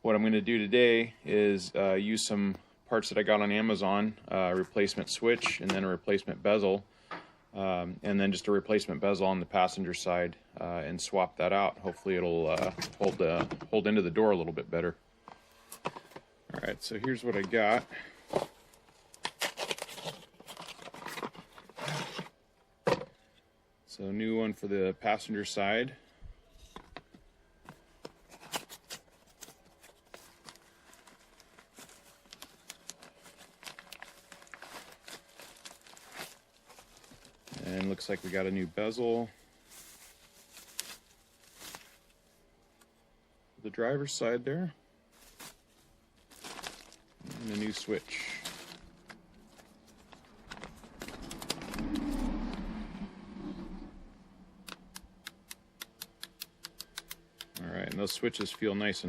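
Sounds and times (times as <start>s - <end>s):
rustling of handled part: 15.2s - 23.5s
packaging rustling: 17.1s - 22.4s, 27.7s - 42.3s, 45.1s - 52.2s.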